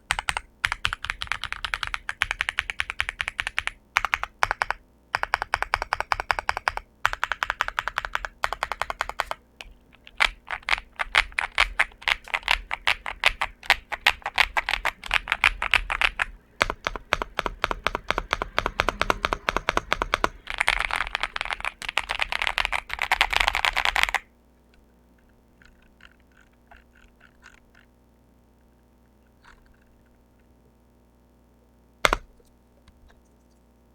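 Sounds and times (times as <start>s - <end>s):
mechanical keyboard typing: 0.0s - 24.3s, 25.6s - 27.9s, 32.0s - 32.3s.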